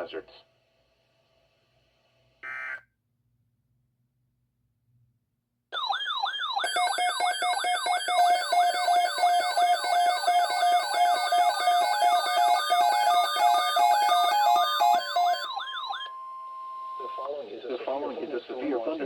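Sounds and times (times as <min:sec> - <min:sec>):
stepped beeping tone: 0:07.2 - 0:15.5.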